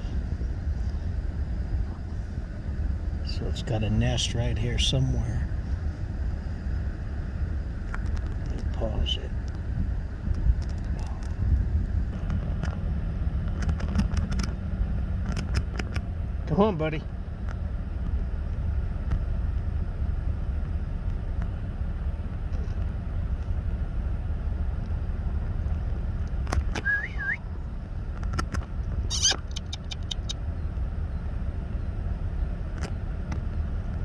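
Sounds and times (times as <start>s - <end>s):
low wind rumble on microphone: 0.0s - 34.0s
short rising bird call: 26.8s - 27.5s, 29.1s - 30.4s.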